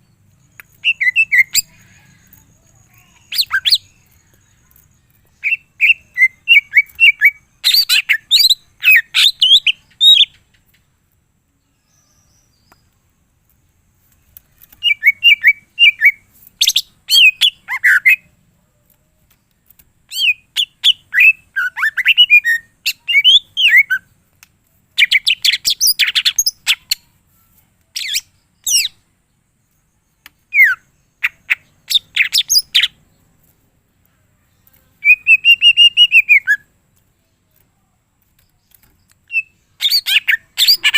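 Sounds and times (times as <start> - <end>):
bird singing chirps and whistles: 0.4 - 2.3, 3.0 - 4.6, 5.2 - 10.4, 14.7 - 18.3, 20.1 - 24.1, 25.0 - 27.0, 28.0 - 29.0, 29.6 - 33.0, 35.0 - 36.7, 38.7 - 40.9.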